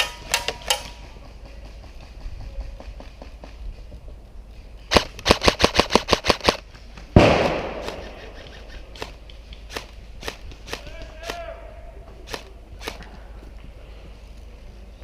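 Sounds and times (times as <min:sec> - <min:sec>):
airsoft gun rapid shots: 0:04.9 - 0:06.6.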